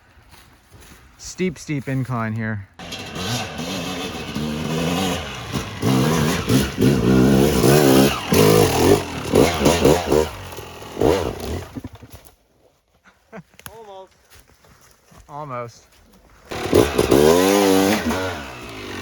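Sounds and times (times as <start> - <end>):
dirt bike engine revving: 2.8 - 12.1, 16.5 - 19.0.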